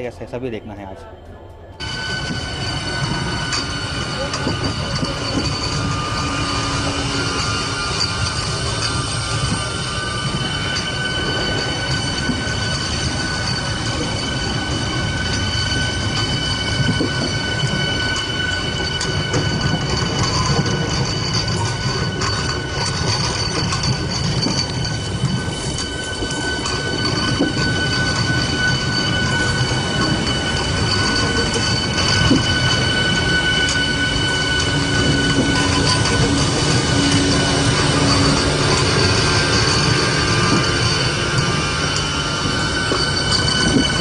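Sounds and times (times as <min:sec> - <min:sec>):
train rumbling on track: 0:00.0 - 0:44.0.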